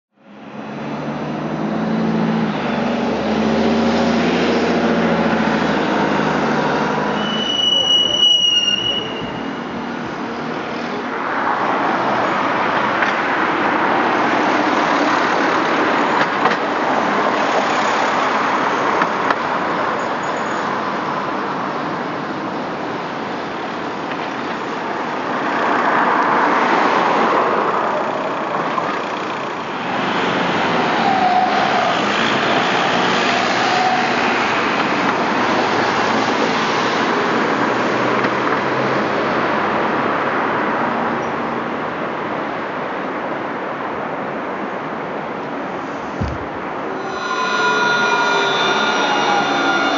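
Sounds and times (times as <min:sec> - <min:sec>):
traffic rushing past: 0:00.2 - 0:24.1, 0:44.8 - 0:49.9.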